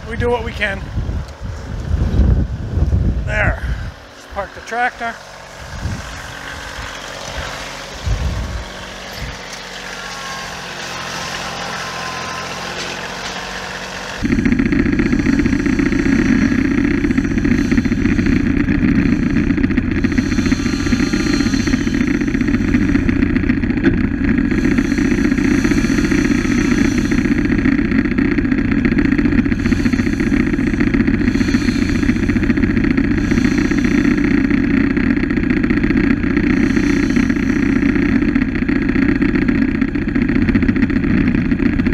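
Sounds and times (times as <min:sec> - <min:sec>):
engine idling: 0:00.0 - 0:41.9
loud steady engine: 0:00.0 - 0:41.9
saw blade hissing: 0:06.8 - 0:14.3, 0:15.0 - 0:23.1, 0:24.4 - 0:27.8, 0:29.4 - 0:35.1, 0:36.4 - 0:38.4.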